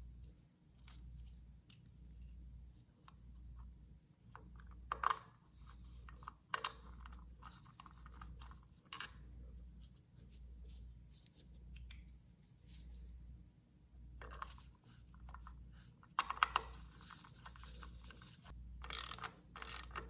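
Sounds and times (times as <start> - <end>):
small plastic and metal parts clicking: 18.8 - 20.0.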